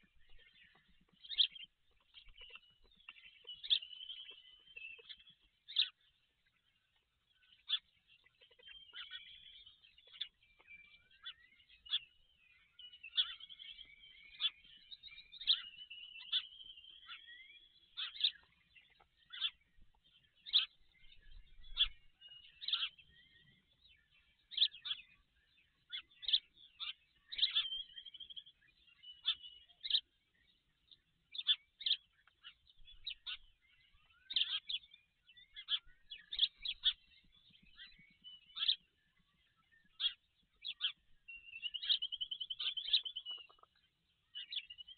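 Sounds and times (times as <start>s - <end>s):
high-pitched bird chirps: 0.0s - 6.0s, 7.4s - 30.2s, 31.3s - 44.9s
drawn-out bird whistles: 8.6s - 18.4s, 25.9s - 30.1s, 39.6s - 43.6s.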